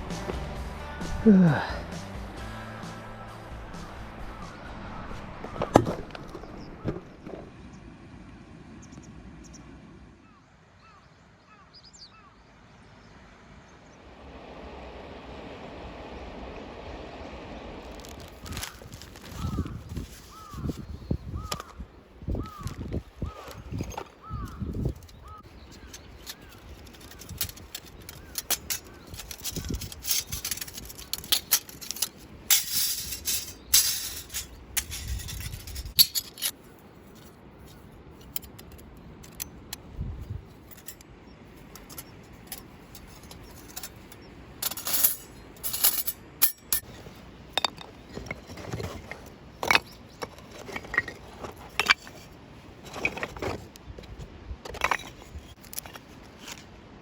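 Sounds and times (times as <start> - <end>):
bag rustling: 17.8 - 21.7, 25.2 - 36.6
metal clinks and knocks: 22.5 - 39.6, 40.5 - 56.6.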